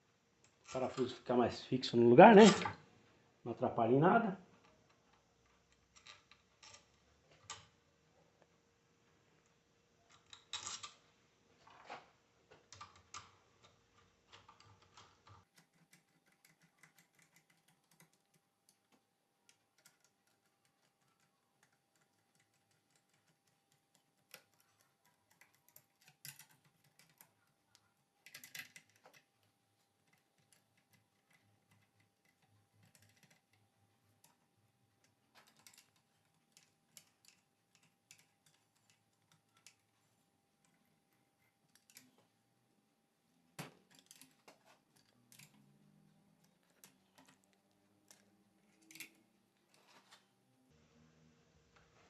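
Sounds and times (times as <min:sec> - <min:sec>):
clicks of metal parts and tools: 0:02.4 - 0:02.8, 0:35.0 - 0:39.9, 0:43.6 - 0:45.8.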